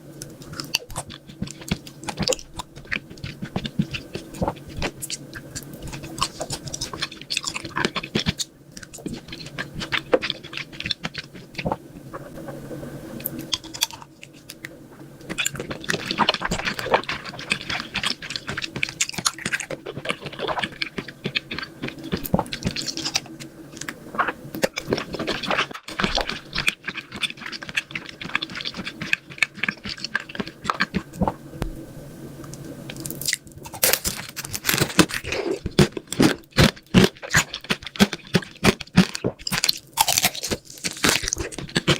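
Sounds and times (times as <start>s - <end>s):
faint steady hum: 0.0s - 41.9s
chewing and crunching: 0.1s - 12.5s, 13.2s - 31.4s, 32.5s - 41.9s.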